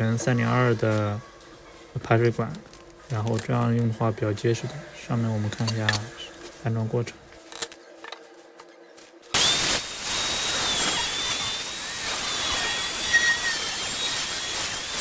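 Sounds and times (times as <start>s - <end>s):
power tool whining: 9.3s - 15.0s.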